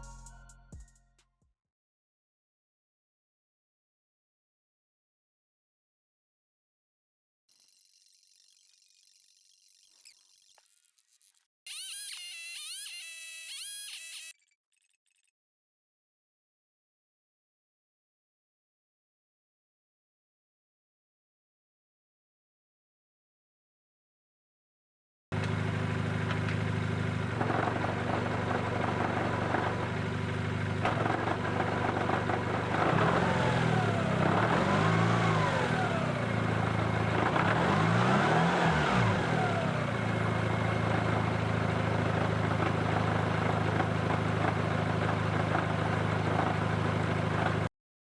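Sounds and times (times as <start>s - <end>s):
car engine drone: 25.4s - 47.7s.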